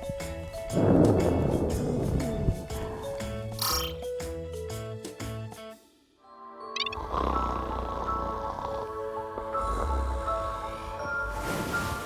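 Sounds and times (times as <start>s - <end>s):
background music: 0.0s - 12.0s
twinkling chime: 0.8s - 4.4s
comic growling snore: 6.8s - 12.0s.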